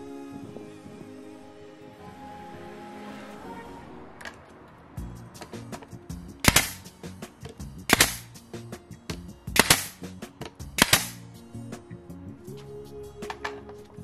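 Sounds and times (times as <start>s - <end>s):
background music: 0.0s - 14.0s
nail gun firing: 6.4s - 6.9s, 7.9s - 8.4s, 9.5s - 10.1s, 10.8s - 11.2s.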